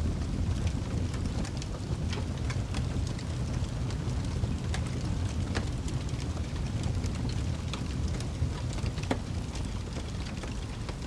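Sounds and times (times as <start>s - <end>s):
fire popping and snapping: 0.0s - 11.0s
wood fire roaring: 0.0s - 11.0s.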